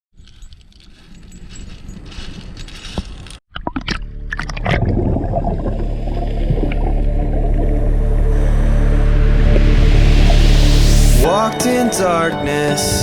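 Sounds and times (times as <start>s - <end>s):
wind: 0.1s - 13.0s
background music: 3.9s - 13.0s.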